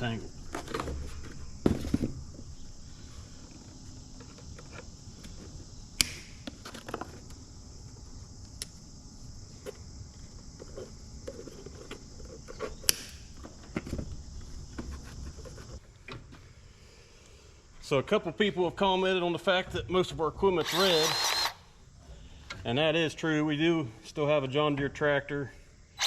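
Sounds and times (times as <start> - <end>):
insect chorus: 0.0 - 26.0
sharp clicks: 6.0 - 6.3.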